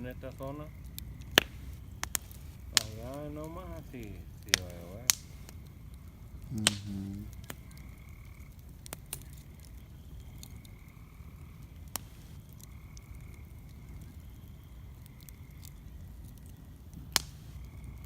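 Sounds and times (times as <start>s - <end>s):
frogs croaking: 0.0s - 18.0s
sharp clicks: 0.9s - 3.7s, 4.4s - 5.7s, 6.4s - 7.6s, 17.1s - 17.4s.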